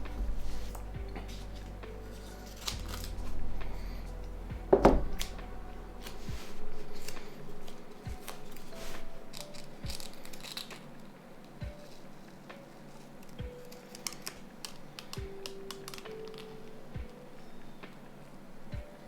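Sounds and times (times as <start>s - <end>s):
low hum: 0.0s - 13.8s
loud knock: 4.7s - 5.2s.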